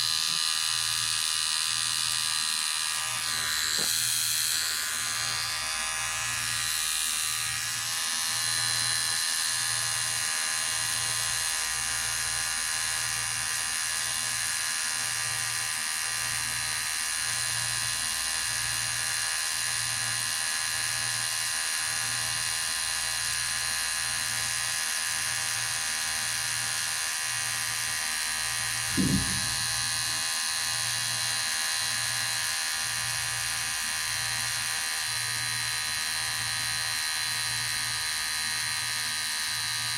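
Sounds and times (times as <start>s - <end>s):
electric hair clipper buzzing: 0.0s - 39.9s
short low thump: 28.9s - 29.9s
pulsing low hum: 28.9s - 30.2s.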